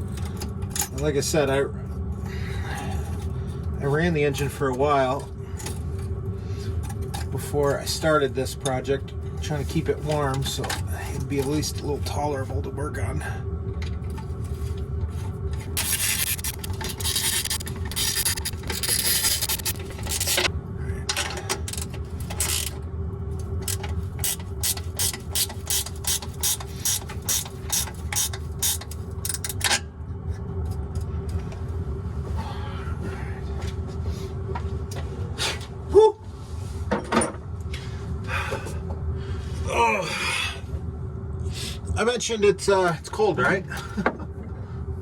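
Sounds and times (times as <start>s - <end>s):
low hum: 0.0s - 45.0s
ratchet wrench clicking: 15.8s - 20.5s, 23.6s - 29.6s.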